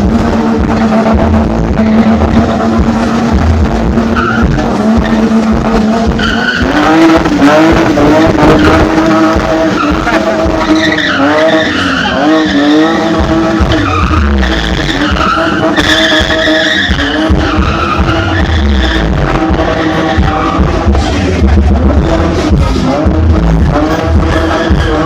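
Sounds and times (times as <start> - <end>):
car engine revving hard: 0.0 - 25.0
tyres squealing: 4.1 - 21.4.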